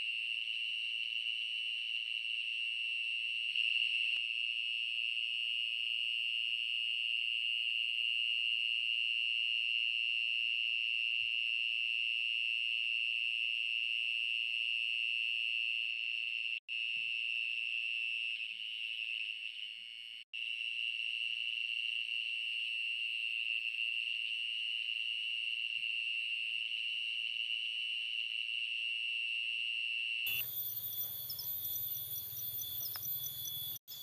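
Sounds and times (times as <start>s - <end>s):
high-pitched insect chorus: 30.3s - 34.0s.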